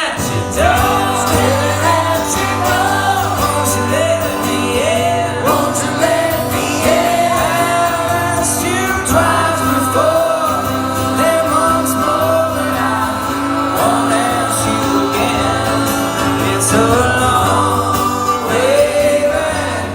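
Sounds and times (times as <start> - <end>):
live band music: 0.0 - 19.9
person singing long notes: 0.0 - 19.9.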